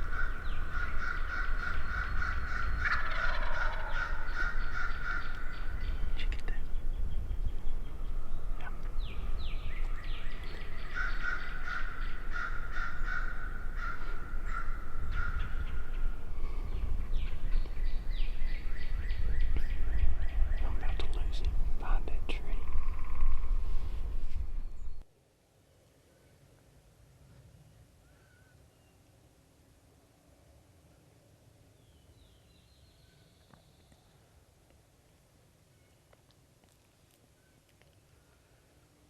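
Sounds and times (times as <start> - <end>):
wild turkey calling: 0.0 - 6.1, 9.7 - 16.6
wind rumble on microphone: 0.0 - 25.0.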